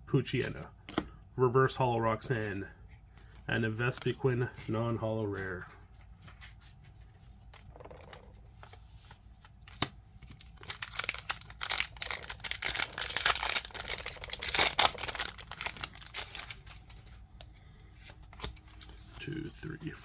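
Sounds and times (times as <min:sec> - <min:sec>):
card handling clicks and taps: 0:00.4 - 0:01.2, 0:09.6 - 0:14.1
foil wrapper tearing and crinkling: 0:09.4 - 0:17.0.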